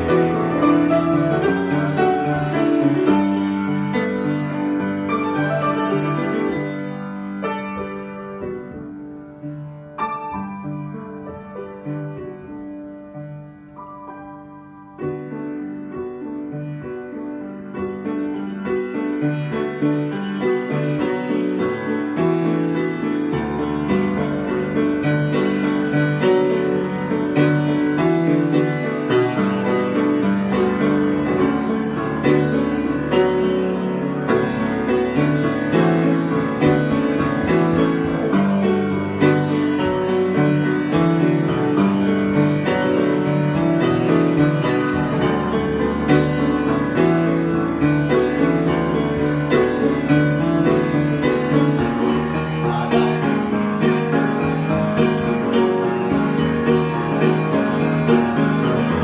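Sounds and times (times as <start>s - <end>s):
improvised piano music: 0.0s - 59.0s.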